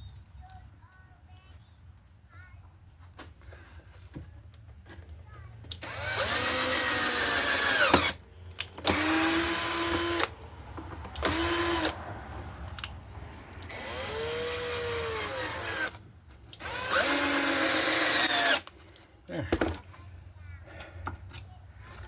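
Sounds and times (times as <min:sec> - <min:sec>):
power drill driving screws: 0:05.7 - 0:10.4, 0:11.1 - 0:12.0, 0:13.6 - 0:18.7.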